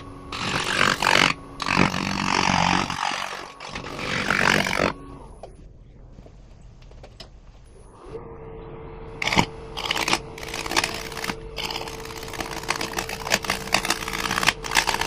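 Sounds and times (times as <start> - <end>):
faint steady hum: 0.0 - 15.0
wood scraping on a lathe: 0.3 - 5.0, 9.2 - 15.0.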